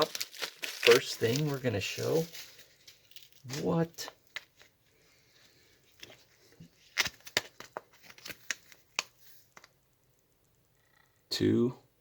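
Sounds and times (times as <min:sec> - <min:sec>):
plastic packaging crinkling: 0:00.0 - 0:04.9, 0:05.8 - 0:09.8
bubble wrap popping clicks: 0:06.9 - 0:09.8.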